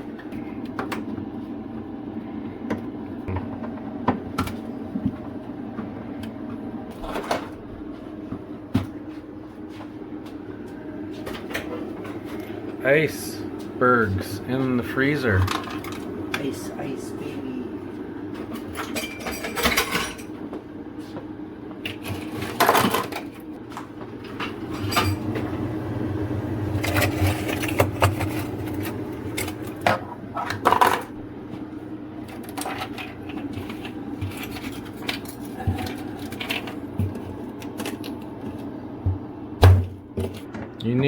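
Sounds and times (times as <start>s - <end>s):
steady low hum: 0.0s - 41.0s
tools and plastic parts clattering: 22.0s - 23.4s, 32.3s - 37.2s.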